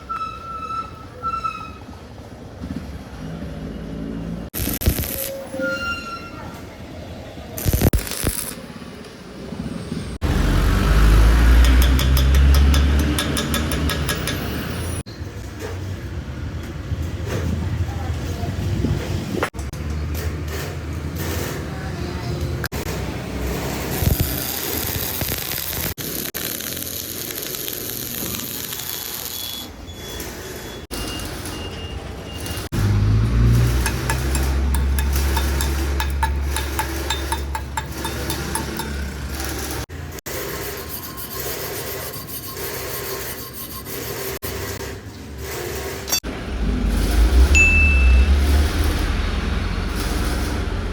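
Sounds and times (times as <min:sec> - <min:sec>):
welding arc crackling: 0:04.6 - 0:05.5, 0:07.6 - 0:08.9, 0:23.4 - 0:29.7, 0:32.4 - 0:40.5, 0:45.4 - 0:47.5, 0:48.2 - 0:50.9.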